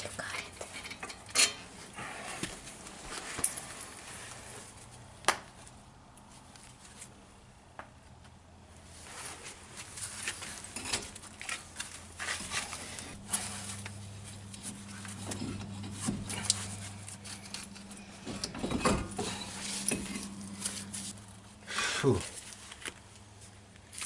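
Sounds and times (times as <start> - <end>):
metallic scraping of brake parts: 10.0 - 21.2
steady low hum: 11.8 - 24.0.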